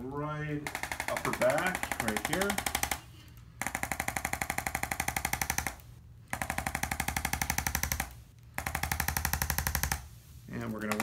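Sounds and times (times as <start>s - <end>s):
adjusting instrument tapping rapidly: 10.8s - 11.0s.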